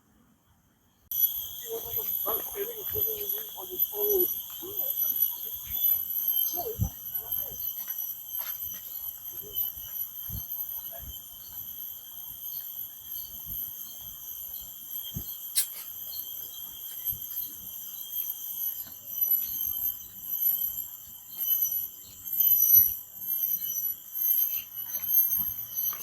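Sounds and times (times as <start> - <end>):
crickets chirping: 0.0 - 26.0
sharp click: 15.6 - 15.9.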